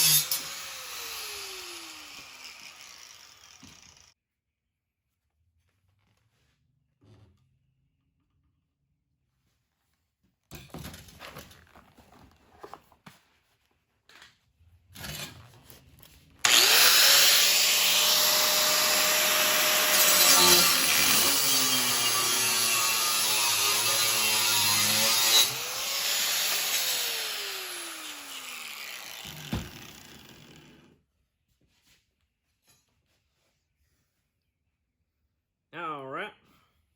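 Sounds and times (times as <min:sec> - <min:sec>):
angle grinder cutting metal: 0:00.0 - 0:04.1, 0:16.4 - 0:30.8.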